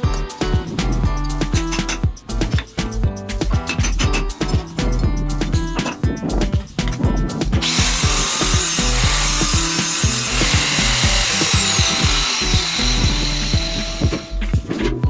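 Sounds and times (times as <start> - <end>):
background music with steady beat: 0.0 - 15.0
loud whirring hiss: 7.6 - 14.1.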